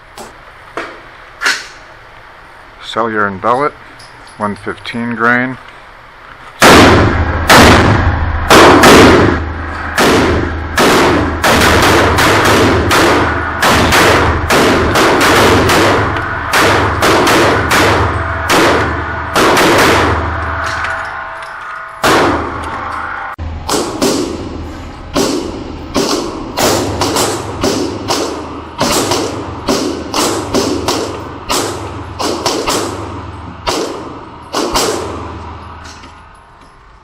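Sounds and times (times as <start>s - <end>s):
pistol shots: 6.6s - 20.4s, 22.0s - 22.6s, 23.6s - 24.5s, 25.1s - 35.4s.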